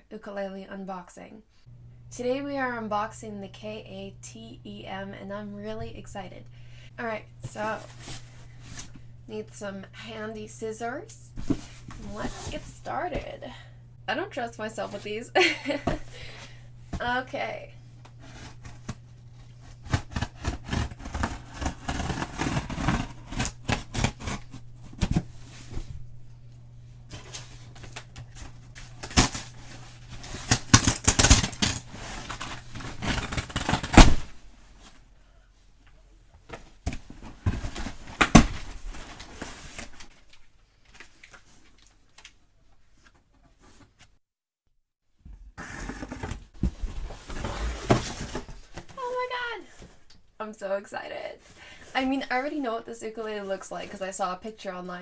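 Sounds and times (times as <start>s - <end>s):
cardboard box rustling and scraping: 18.2s - 26.0s, 45.3s - 48.9s
scissors cutting tape and cardboard: 19.6s - 25.2s, 30.4s - 34.2s.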